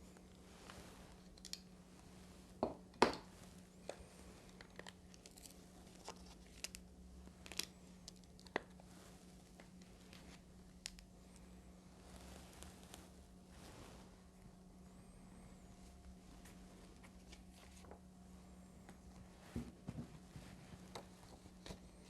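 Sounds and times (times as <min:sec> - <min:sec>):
handling clicks and crinkling: 0:03.8 - 0:11.2.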